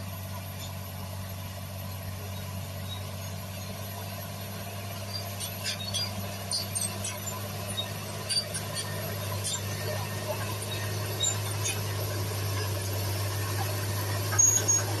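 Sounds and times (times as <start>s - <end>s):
diesel engine running: 0.0s - 15.0s
high squeal: 10.6s - 11.9s, 14.3s - 15.0s.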